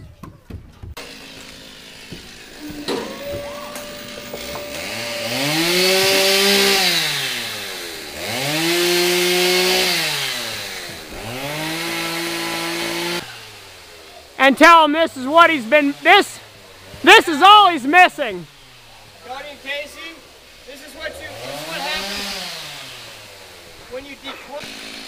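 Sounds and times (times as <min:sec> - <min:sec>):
chain cutting wood: 0:01.0 - 0:13.3
chainsaw idling and revving: 0:01.0 - 0:25.0.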